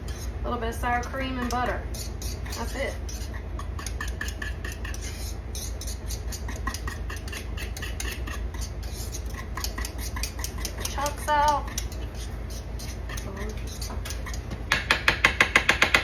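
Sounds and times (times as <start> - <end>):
wire whisk clicking against bowl: 9.3 - 12.1.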